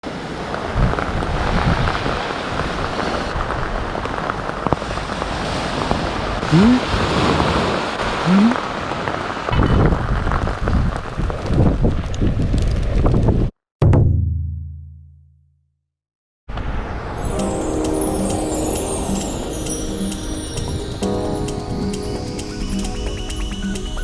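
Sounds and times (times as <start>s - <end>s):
heavy rain pouring: 0.3s - 11.3s, 16.8s - 24.0s.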